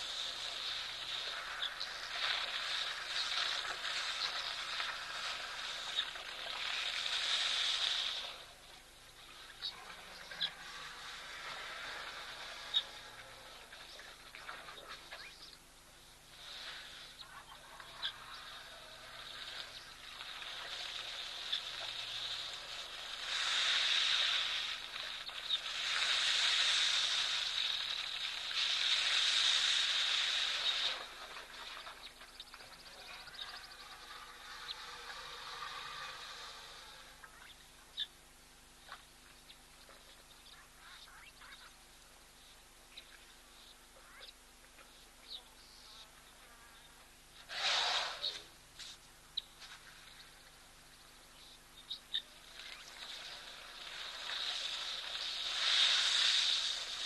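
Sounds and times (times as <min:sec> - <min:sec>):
steady high hiss: 0:00.0 - 0:57.0
high hissing buzz: 0:47.4 - 0:49.0.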